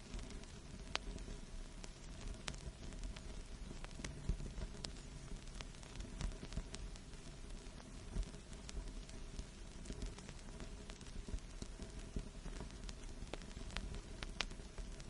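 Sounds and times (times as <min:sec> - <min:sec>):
vinyl clicks and pops: 0:00.0 - 0:15.0
vinyl record hiss and rumble: 0:00.0 - 0:15.0.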